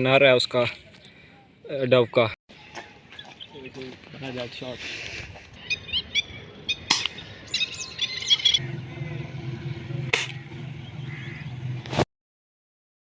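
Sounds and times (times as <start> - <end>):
small birds chirping: 0.8 - 11.8
steady low hum: 6.3 - 11.8.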